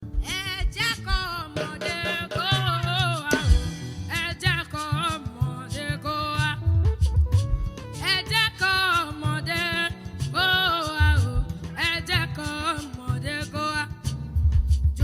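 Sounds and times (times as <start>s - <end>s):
drum beats: 0.0s - 15.0s
person singing: 0.2s - 7.1s, 7.9s - 13.9s
steady bass line: 3.3s - 8.4s, 11.0s - 12.4s, 13.9s - 15.0s.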